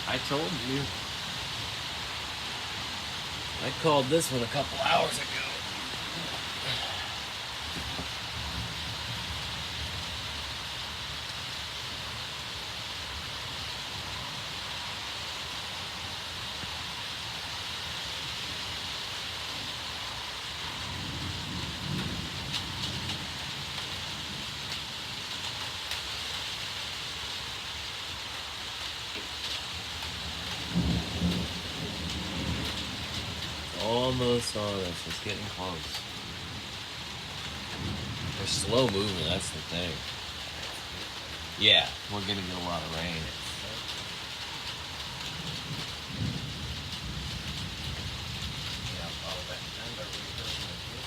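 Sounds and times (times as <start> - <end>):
steady hiss: 0.0 - 51.0
thunder rumbling: 2.9 - 10.4, 20.6 - 25.0, 30.0 - 51.0.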